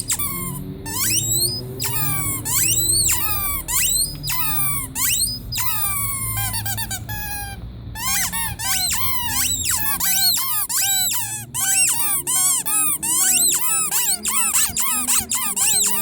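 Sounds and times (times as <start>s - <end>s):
rubber squeaky toy squeaking: 0.0s - 16.0s.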